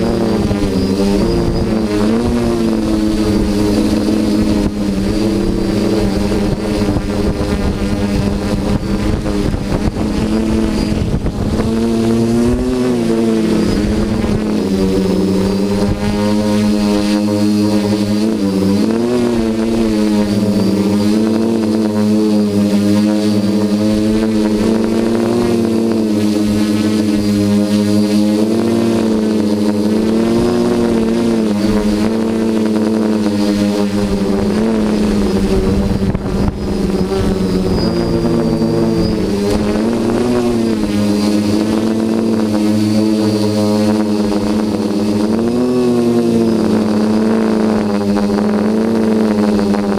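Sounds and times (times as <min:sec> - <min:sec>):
quadcopter motors whining: 0:00.0 - 0:49.9.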